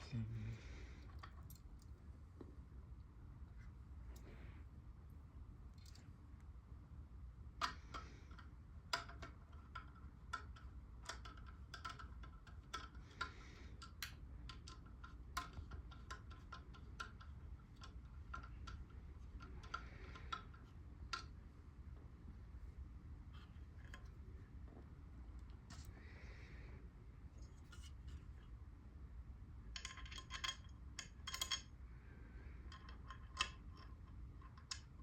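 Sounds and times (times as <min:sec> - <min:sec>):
small metallic clicks and clinks: 0:01.1 - 0:01.9, 0:29.7 - 0:31.8, 0:32.6 - 0:35.0.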